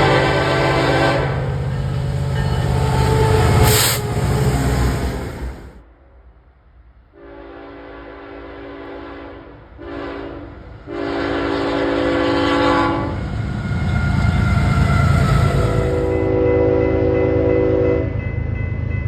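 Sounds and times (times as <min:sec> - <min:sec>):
locomotive air horn: 0:00.0 - 0:01.6, 0:02.4 - 0:04.5, 0:07.2 - 0:13.2, 0:15.0 - 0:18.2
train rumbling past: 0:00.0 - 0:19.0.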